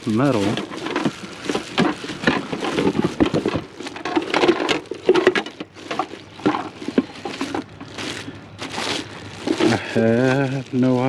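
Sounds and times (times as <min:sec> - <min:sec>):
hard objects knocking and clattering: 0:00.2 - 0:08.0.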